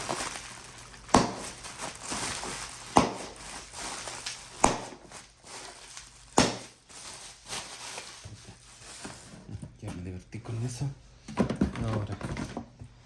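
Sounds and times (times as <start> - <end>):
paper pages rustling: 0.0 - 9.5.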